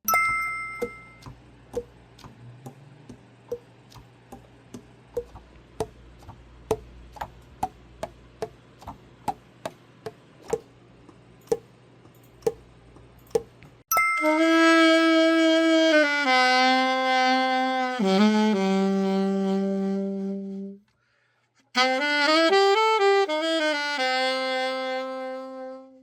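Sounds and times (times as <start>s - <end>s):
short ringing tone: 0.1s - 1.3s, 13.9s - 14.6s
saxophone pads popping: 0.8s - 10.7s.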